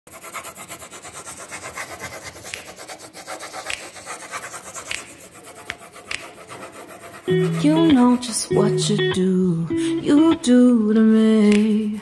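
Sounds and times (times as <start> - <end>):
rasping strokes on paper: 0.1 - 8.5
sharp scratches: 0.1 - 8.9.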